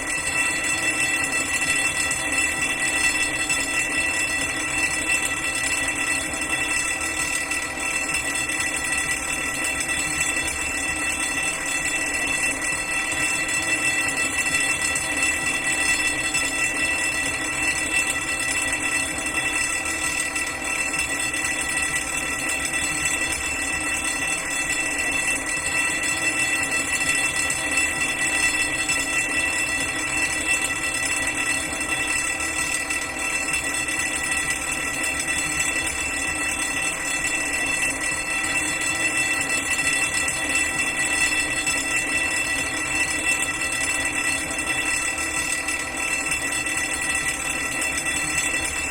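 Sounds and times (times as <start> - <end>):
fire alarm bell ringing: 0.0 - 48.9.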